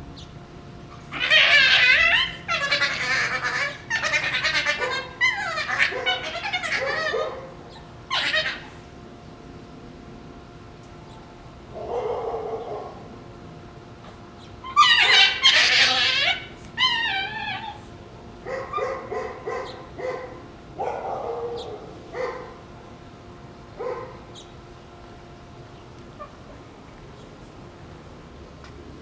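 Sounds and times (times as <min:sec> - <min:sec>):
puppies screaming: 0:00.9 - 0:08.9, 0:14.6 - 0:22.6
puppies growling: 0:00.9 - 0:10.2, 0:11.7 - 0:13.6, 0:14.6 - 0:22.7
puppy yips and yelps: 0:01.0 - 0:07.5, 0:08.1 - 0:08.8, 0:14.6 - 0:17.8.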